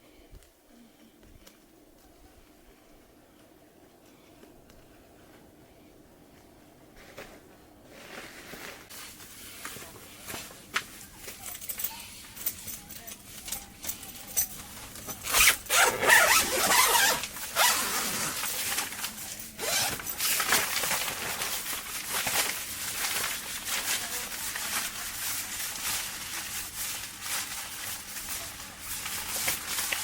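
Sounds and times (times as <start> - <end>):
rustling: 6.3 - 30.0
zipper rasping: 15.2 - 18.5, 19.6 - 20.0.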